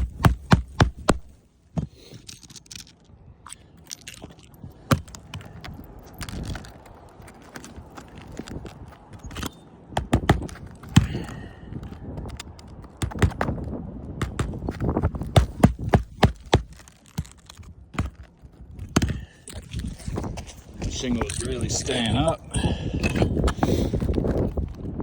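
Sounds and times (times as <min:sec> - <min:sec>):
hammer driving nails: 0:00.0 - 0:02.0, 0:15.2 - 0:18.2
rustling: 0:00.0 - 0:09.6, 0:10.4 - 0:22.1.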